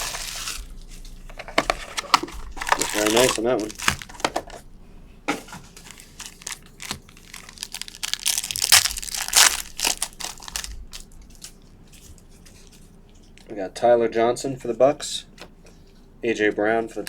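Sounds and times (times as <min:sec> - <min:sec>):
plastic wrapper crinkling and tearing: 0:00.0 - 0:04.6, 0:05.7 - 0:12.7.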